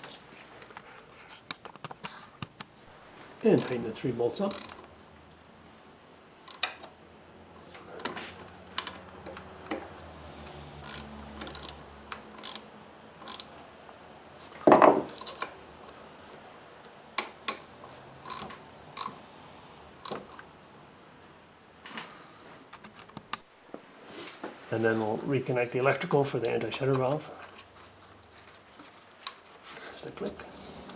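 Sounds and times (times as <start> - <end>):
ratchet clicking: 4.5 - 4.9, 6.4 - 6.9, 10.4 - 13.5, 18.2 - 19.2
loud knock: 14.7 - 15.1.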